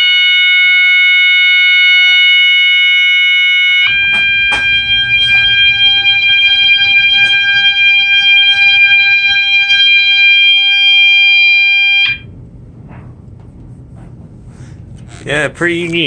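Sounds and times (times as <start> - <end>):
continuous electronic alarm tone: 0.0 - 12.3.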